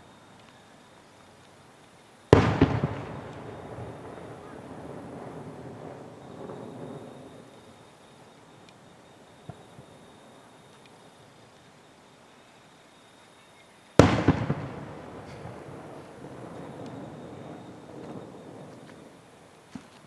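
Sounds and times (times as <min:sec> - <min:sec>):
firework bangs: 0:02.3 - 0:10.3, 0:14.0 - 0:19.5
rolling echo: 0:02.3 - 0:10.9, 0:14.0 - 0:19.5.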